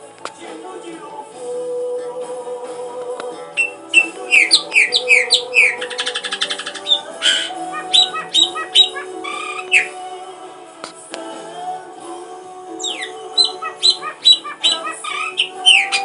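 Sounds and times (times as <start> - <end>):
background music held notes: 0.0 - 16.0
bird chirping and trilling: 3.6 - 10.0, 12.8 - 16.0.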